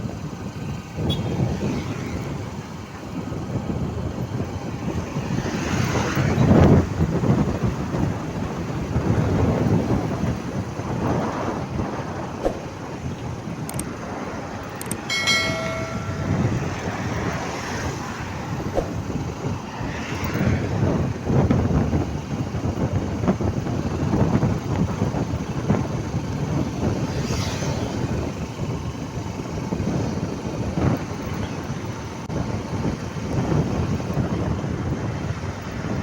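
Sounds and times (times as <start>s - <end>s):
vehicle and road noise: 0.0s - 36.0s
wind buffeting microphone: 0.0s - 36.0s
vehicle horn: 1.0s - 1.4s.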